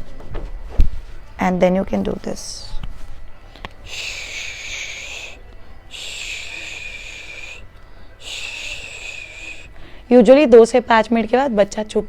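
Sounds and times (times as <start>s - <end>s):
woman shushing: 3.8s - 7.6s, 8.2s - 9.8s.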